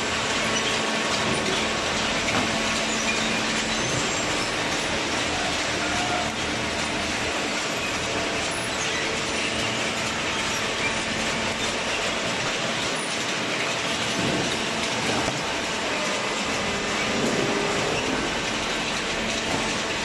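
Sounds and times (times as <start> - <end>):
baling machine clatter: 0.0 - 20.0
low machine hum: 0.0 - 20.0.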